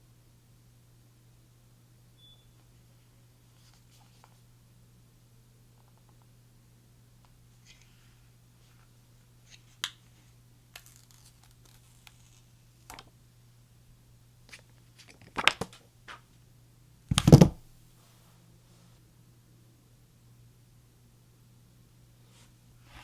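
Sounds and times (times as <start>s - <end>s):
taps on box: 17.1s - 17.6s.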